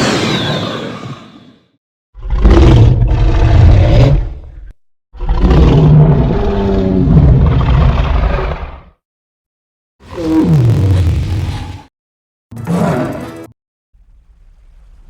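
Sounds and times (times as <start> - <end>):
cartoon dinosaur roaring: 12.6 - 13.5.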